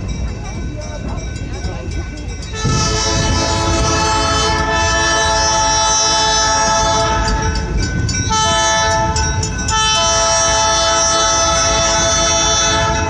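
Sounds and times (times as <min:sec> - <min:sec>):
low rumble of moving train: 0:00.0 - 0:13.0
train horn chord: 0:02.5 - 0:07.6, 0:08.3 - 0:13.0.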